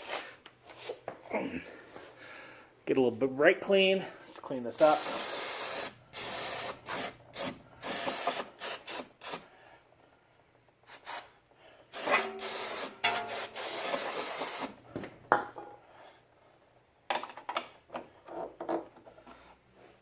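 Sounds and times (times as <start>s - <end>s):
aerosol spray bursts: 4.8s - 9.4s, 10.9s - 11.3s, 12.0s - 14.8s.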